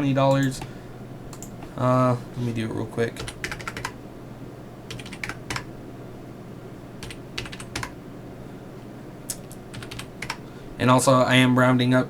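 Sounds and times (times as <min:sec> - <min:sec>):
computer keyboard typing: 0:01.3 - 0:01.5, 0:03.2 - 0:04.0, 0:04.9 - 0:05.7, 0:07.0 - 0:08.0, 0:09.7 - 0:10.4.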